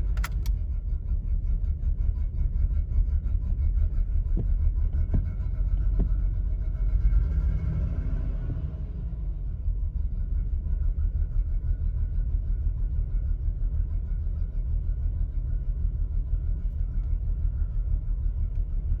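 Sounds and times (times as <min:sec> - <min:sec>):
car engine idling roughly: 0:00.0 - 0:06.9.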